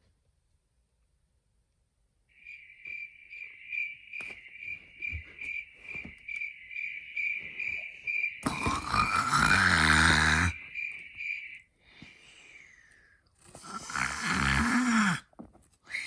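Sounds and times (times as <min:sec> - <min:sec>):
cricket chirping: 0:02.3 - 0:15.2
loud rasping snore: 0:08.4 - 0:10.6, 0:13.4 - 0:15.3.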